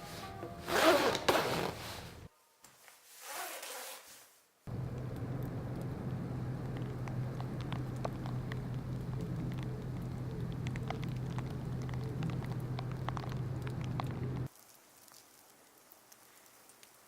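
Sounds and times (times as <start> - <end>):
rubbing noise: 0.0 - 2.3
steady low hum: 4.7 - 14.5.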